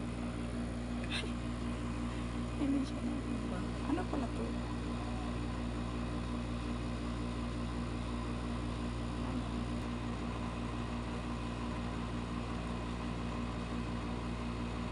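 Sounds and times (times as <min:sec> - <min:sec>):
low machine hum with hiss: 0:00.0 - 0:14.9.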